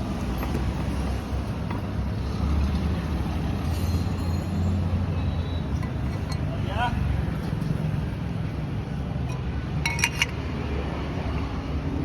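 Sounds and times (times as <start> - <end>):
metallic clinks: 9.2 - 10.4.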